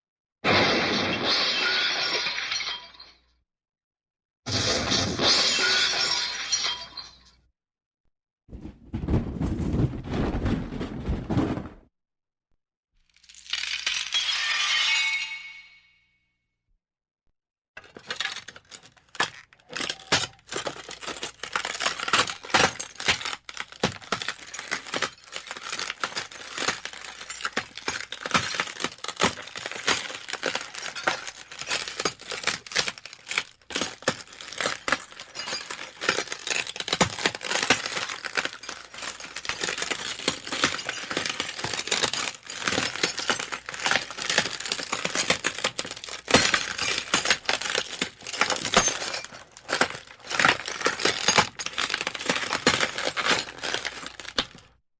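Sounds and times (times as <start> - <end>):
crash impacts and breakages: 0.5 - 2.9, 8.5 - 11.8, 19.8 - 54.8.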